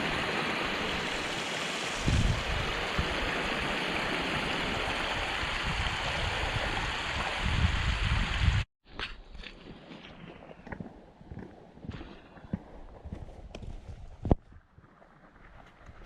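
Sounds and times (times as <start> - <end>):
stream water rushing: 0.0 - 8.6
wind rumbling on microphone: 2.0 - 8.7, 9.6 - 16.0.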